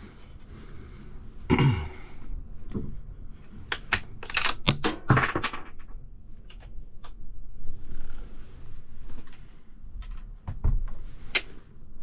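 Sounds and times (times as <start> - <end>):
metallic clicks and clinks: 4.2 - 5.9.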